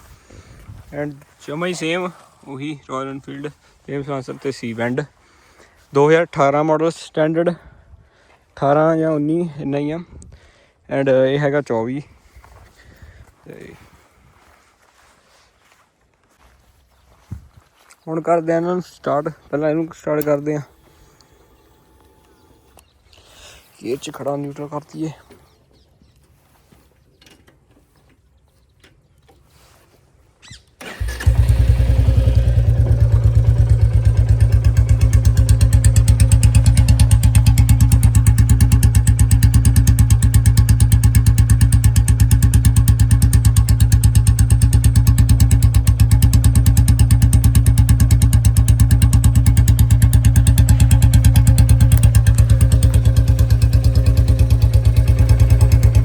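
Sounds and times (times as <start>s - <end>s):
motorcycle engine starting and idling: 19.6s - 23.0s, 30.4s - 56.0s.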